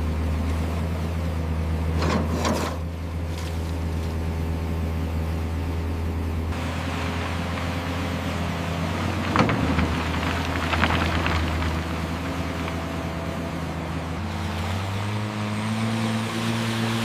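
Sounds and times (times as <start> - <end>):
short clatter: 8.9 - 13.2.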